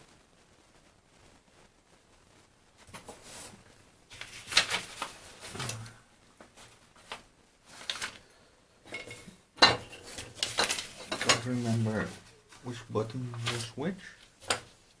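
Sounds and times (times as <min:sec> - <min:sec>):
small plastic parts being handled: 0:08.9 - 0:14.8.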